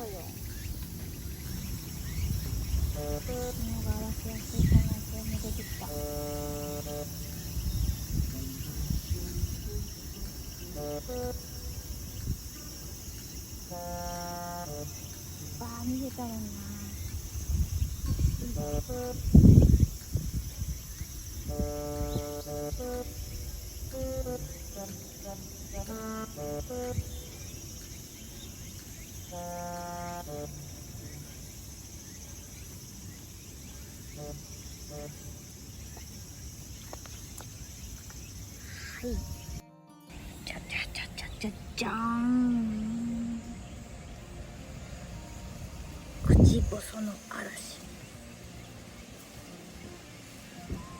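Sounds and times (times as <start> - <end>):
crickets and insects chirring: 0.0 - 50.9
person humming: 3.0 - 7.1, 41.5 - 43.8.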